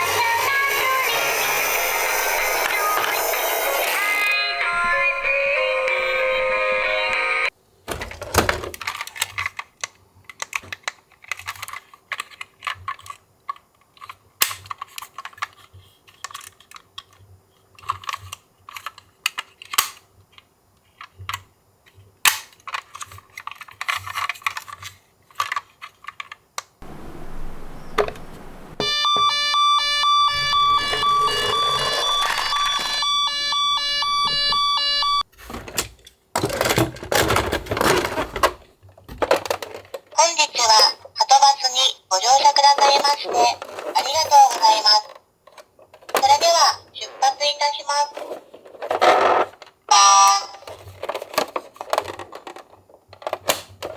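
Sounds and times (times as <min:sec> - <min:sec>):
toy vehicles clicking and clattering: 0:00.0 - 0:04.4, 0:07.9 - 0:26.7, 0:28.8 - 0:34.8, 0:35.7 - 0:53.9
toy electronic beeping tune: 0:00.0 - 0:04.6, 0:28.8 - 0:35.2, 0:49.9 - 0:50.6.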